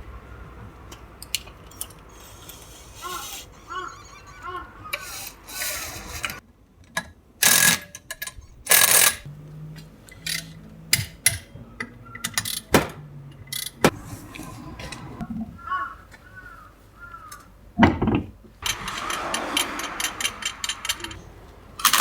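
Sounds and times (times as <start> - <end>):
metallic clicks and clanks: 4.9 - 14.0, 17.3 - 22.0.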